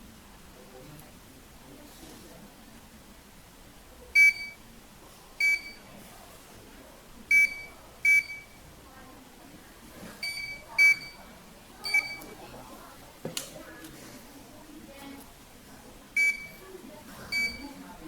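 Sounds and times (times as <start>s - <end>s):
barcode scanner beeps: 4.2s - 4.6s, 5.4s - 5.9s, 7.3s - 8.6s, 10.2s - 11.2s, 11.8s - 12.4s, 16.2s - 16.6s, 17.3s - 17.8s.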